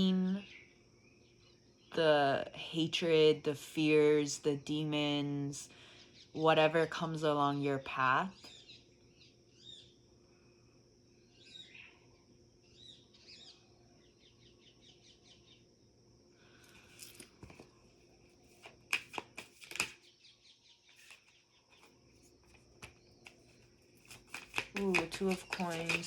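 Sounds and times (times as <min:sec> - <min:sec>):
faint bird chirps: 0:00.0 - 0:02.0, 0:08.3 - 0:15.8
cards being shuffled: 0:16.7 - 0:20.0, 0:20.9 - 0:26.0
card snaps: 0:18.6 - 0:20.0.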